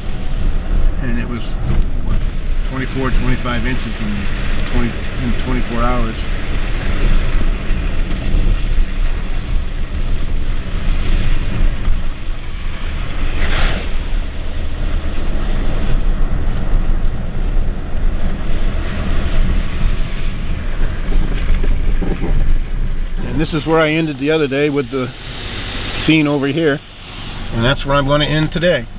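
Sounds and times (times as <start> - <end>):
truck engine and tyre noise: 0.0 - 28.9
brief swish: 13.4 - 14.0.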